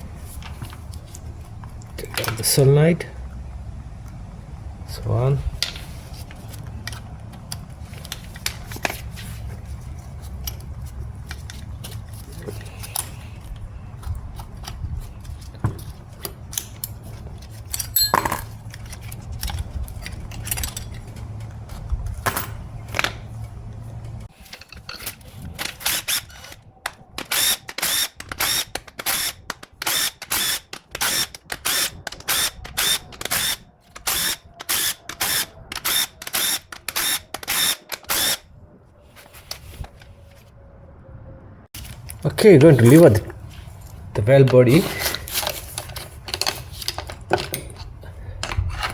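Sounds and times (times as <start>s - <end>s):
metallic clicks of parts handled: 16.2s - 23.3s, 44.4s - 48.9s
tool working on bolts in bursts: 25.7s - 26.5s, 27.2s - 38.4s.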